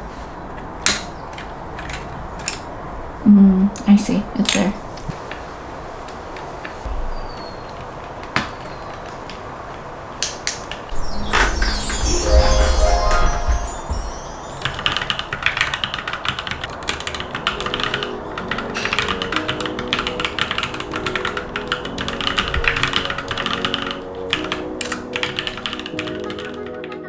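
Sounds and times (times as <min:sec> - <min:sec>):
background music: 0:11.0 - 0:15.4.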